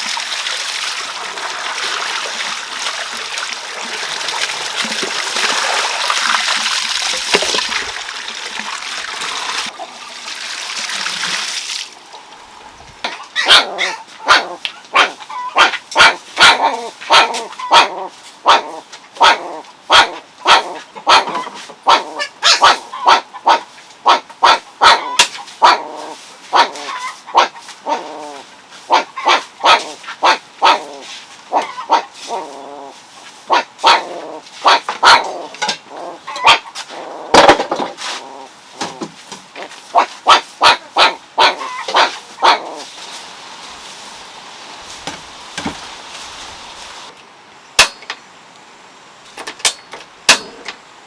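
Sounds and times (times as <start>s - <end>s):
dog barking: 13.1s - 25.9s, 26.5s - 28.0s, 28.9s - 30.9s, 31.5s - 32.1s, 33.5s - 35.5s, 36.4s - 36.6s, 39.9s - 42.9s.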